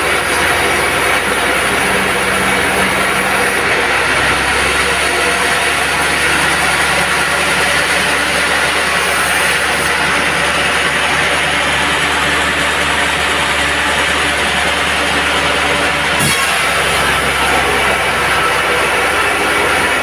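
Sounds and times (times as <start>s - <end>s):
sawmill machine drone: 0.0s - 20.0s.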